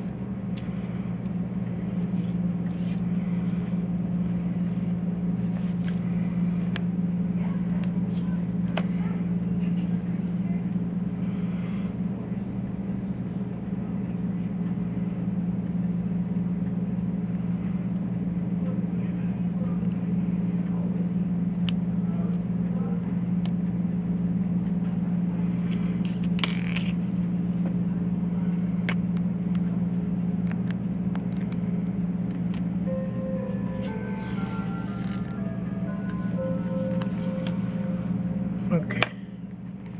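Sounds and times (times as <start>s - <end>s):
low mechanical hum: 0.0s - 39.9s.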